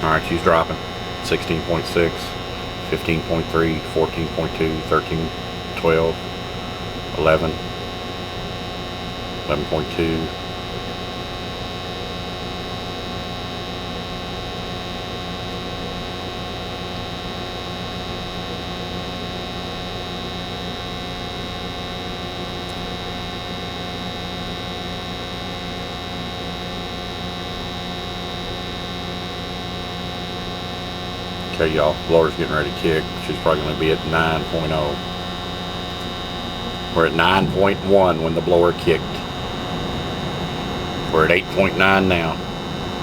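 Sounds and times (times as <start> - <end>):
furnace hum: 0.0 - 12.8, 29.7 - 43.0.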